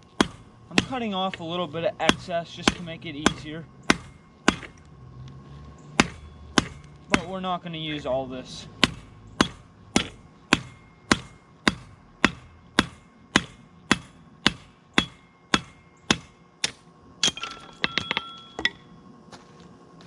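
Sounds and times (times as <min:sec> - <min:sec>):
hammer striking steel on anvil: 0:00.0 - 0:04.8, 0:06.0 - 0:08.0, 0:08.7 - 0:18.9
light ringing clinks: 0:17.2 - 0:18.9.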